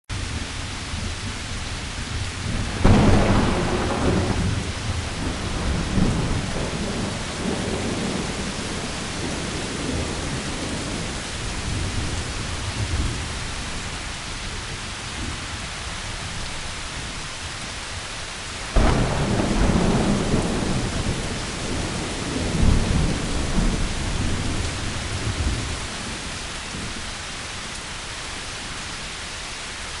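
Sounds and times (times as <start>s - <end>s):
steady rain: 0.1s - 30.0s
thunder rumbling: 0.2s - 14.0s, 18.7s - 27.0s.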